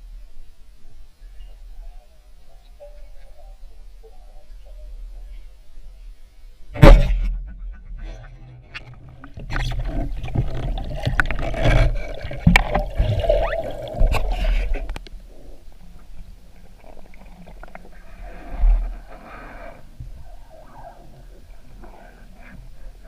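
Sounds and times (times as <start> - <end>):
water splashing and sloshing: 8.8 - 15.2.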